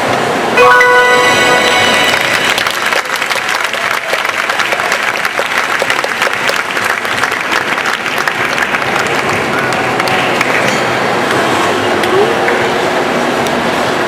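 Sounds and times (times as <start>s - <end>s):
audience applauding: 0.8s - 10.7s.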